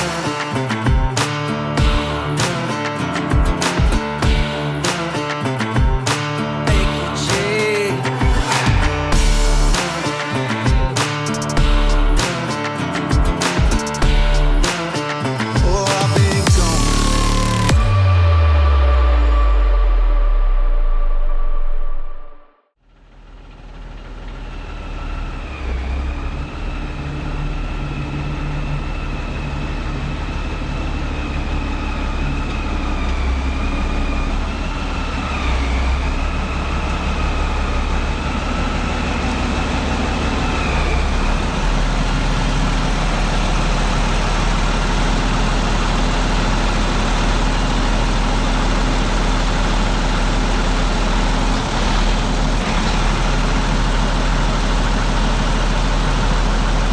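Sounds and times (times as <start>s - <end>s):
high wavering whine: 0.0s - 22.5s
heavy engine low rumble: 16.5s - 56.9s.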